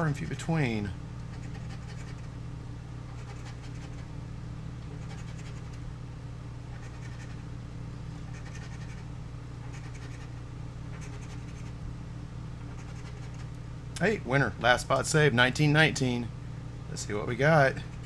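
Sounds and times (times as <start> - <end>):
steady low hum: 0.0 - 18.0
lottery ticket being scratched: 1.2 - 2.3, 3.1 - 4.1, 4.9 - 5.8, 8.3 - 9.0, 12.7 - 13.5.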